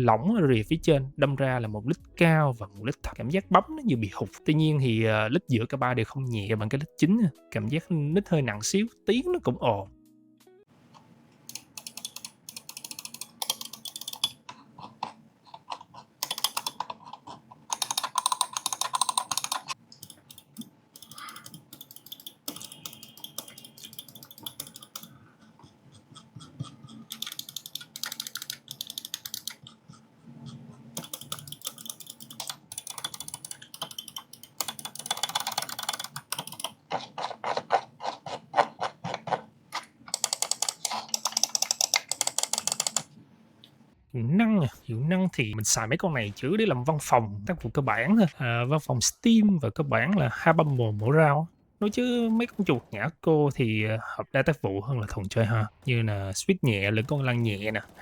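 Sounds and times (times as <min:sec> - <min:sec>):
mouse buttons clicking rapidly: 0:11.5 - 0:39.4, 0:40.1 - 0:43.1, 0:56.9 - 0:58.0.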